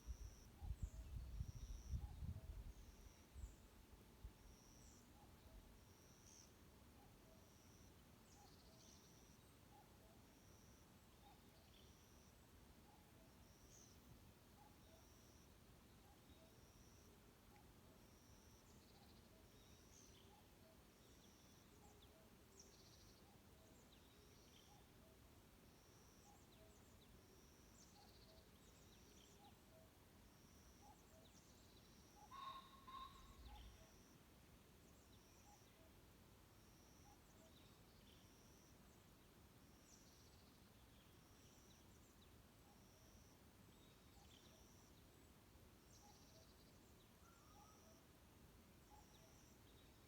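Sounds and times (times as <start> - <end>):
bird double call: 32.3 - 33.7.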